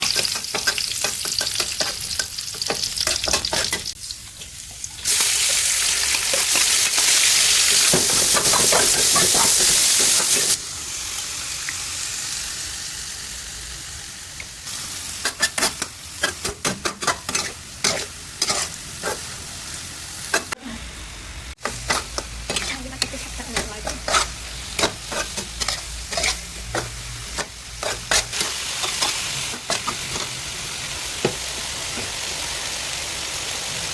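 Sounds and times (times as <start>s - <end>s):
food sizzling in hot oil: 0.0s - 33.9s
utensil scraping a pan: 15.3s - 19.3s, 21.6s - 30.3s.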